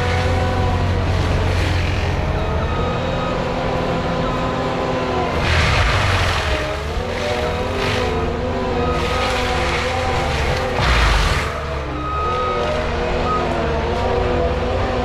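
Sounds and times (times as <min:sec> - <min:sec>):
diesel engine under load: 0:00.0 - 0:15.0
harsh grinding noise: 0:05.2 - 0:12.5.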